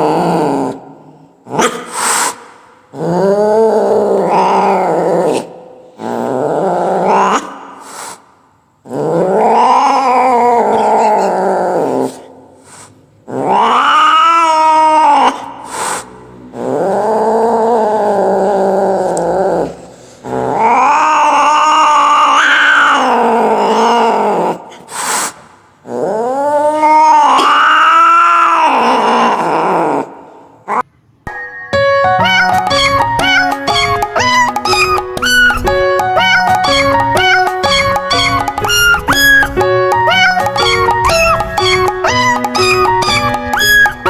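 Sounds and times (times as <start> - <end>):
cat yowling: 3.6 - 5.5, 9.2 - 12.3, 13.3 - 15.9, 16.6 - 24.6, 26.2 - 30.1, 32.0 - 44.0.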